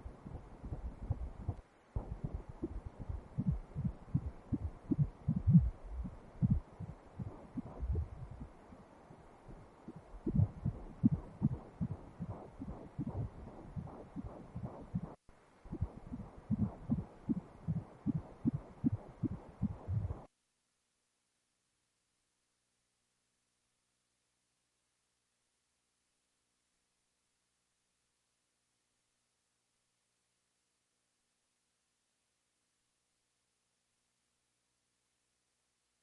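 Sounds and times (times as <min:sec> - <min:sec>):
fetal heartbeat on doppler: 0:00.0 - 0:08.6, 0:09.9 - 0:20.3.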